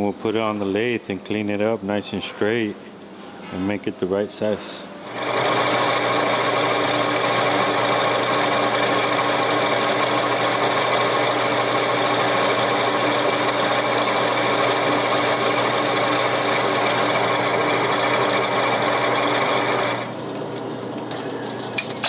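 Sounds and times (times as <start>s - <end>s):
machine humming: 4.9s - 22.0s.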